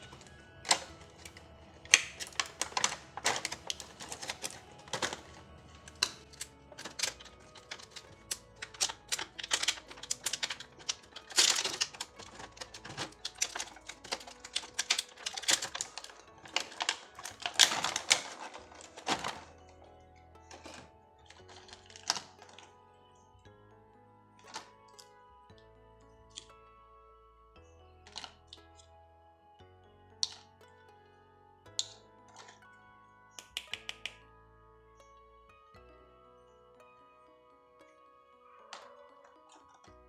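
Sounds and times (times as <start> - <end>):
plastic toy pieces clattering: 0.0 - 23.2, 24.4 - 25.2, 26.3 - 26.6, 28.1 - 28.9, 30.2 - 30.5, 31.7 - 32.6, 38.7 - 40.0
soft background music: 0.0 - 40.0.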